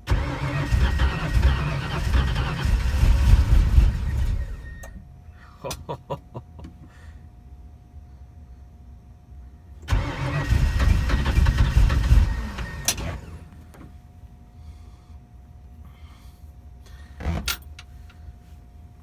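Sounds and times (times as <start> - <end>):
car engine starting and running: 0.0 - 5.1, 9.8 - 14.2.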